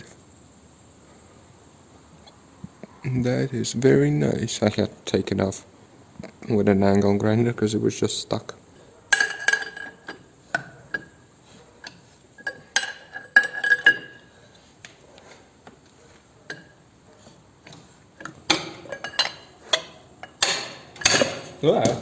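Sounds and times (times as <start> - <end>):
metal tools knocking on steel: 9.1 - 14.4, 16.4 - 16.8, 17.6 - 22.0.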